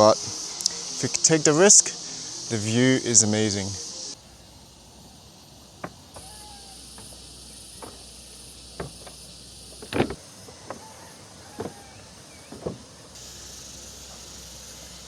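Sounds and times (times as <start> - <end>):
high insect chirring: 0.0 - 15.0
short irregular knocks: 5.7 - 13.2.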